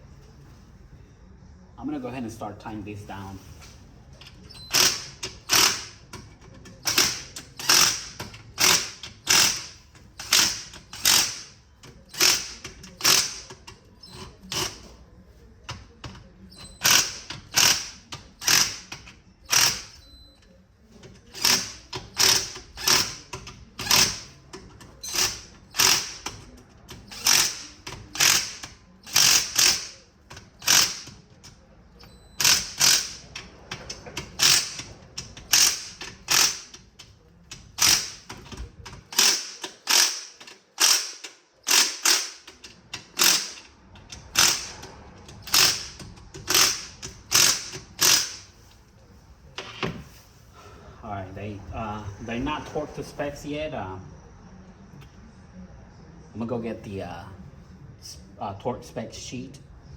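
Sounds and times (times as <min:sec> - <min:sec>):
hand ratchet clicking: 0:04.2 - 0:14.9, 0:15.7 - 0:20.1, 0:21.0 - 0:31.6, 0:32.3 - 0:48.5.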